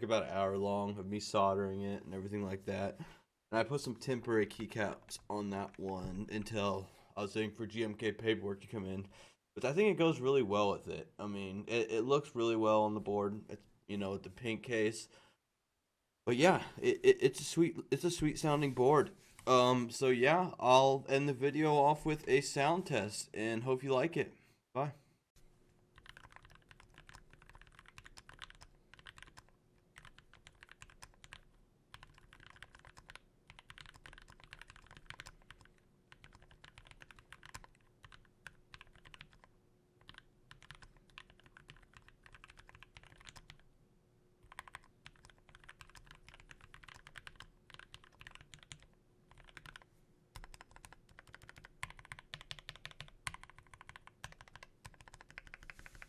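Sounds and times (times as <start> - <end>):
mechanical keyboard typing: 26.0 - 43.6, 44.4 - 56.0.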